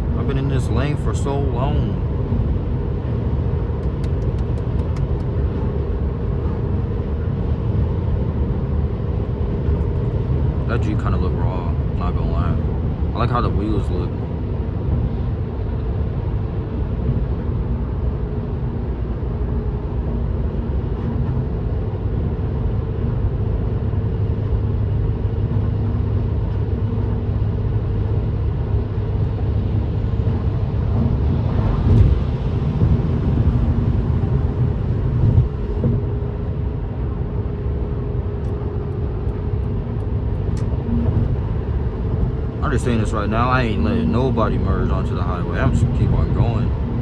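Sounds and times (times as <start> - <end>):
car engine drone: 0.0 - 47.0
tyre and road rumble: 24.7 - 47.0.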